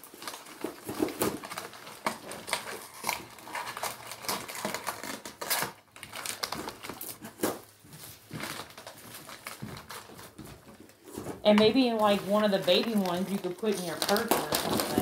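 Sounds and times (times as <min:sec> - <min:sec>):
gift packaging crackling and rustling: 0:00.0 - 0:15.0.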